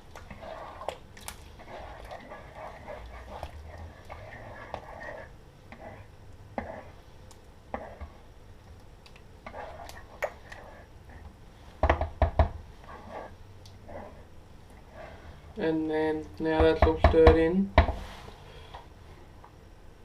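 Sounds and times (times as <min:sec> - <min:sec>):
spoon scraping a pot: 0:00.2 - 0:07.0, 0:07.7 - 0:08.2, 0:09.4 - 0:11.3, 0:12.8 - 0:14.2.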